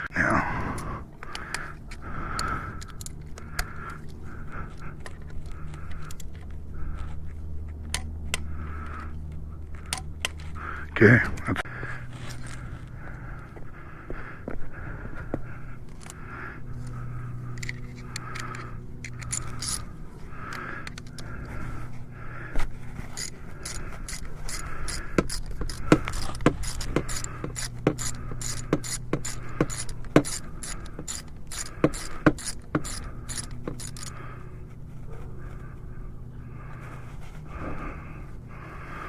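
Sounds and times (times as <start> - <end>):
low hum: 0.0 - 39.0
ratchet wrench clicking: 16.8 - 19.9, 23.1 - 34.2.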